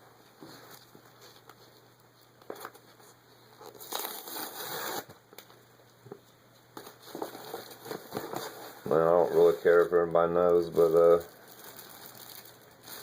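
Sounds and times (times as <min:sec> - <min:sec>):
packaging crinkling and rustling: 0:02.4 - 0:05.1, 0:06.8 - 0:13.0.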